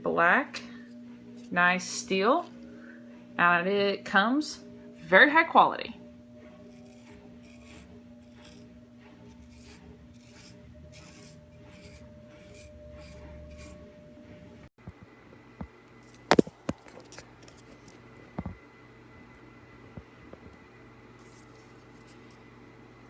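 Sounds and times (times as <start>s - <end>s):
knife scraping strokes: 6.6s - 13.8s, 21.2s - 22.4s.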